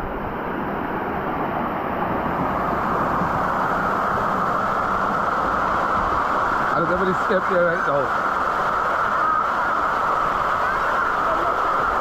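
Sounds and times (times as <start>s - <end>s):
water falling and splashing: 2.4s - 12.0s.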